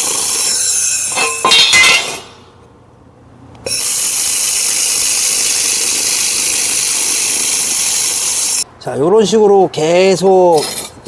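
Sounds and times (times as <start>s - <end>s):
laser welder hissing: 3.7s - 8.6s.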